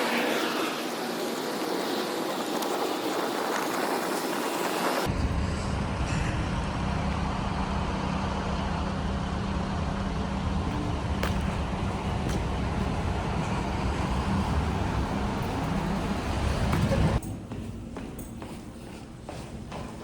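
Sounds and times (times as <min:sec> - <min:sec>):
car tyres and engine rumble: 0:00.0 - 0:17.8.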